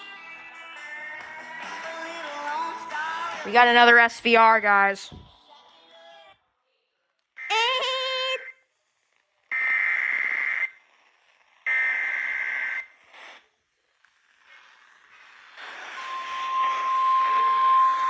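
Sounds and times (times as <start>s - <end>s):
digital data screeches: 15.5s - 18.0s.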